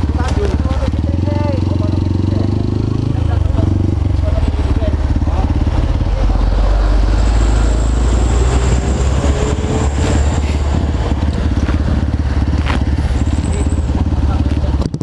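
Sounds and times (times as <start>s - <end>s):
motorcycle engine thumping: 0.0s - 7.2s, 8.7s - 15.0s.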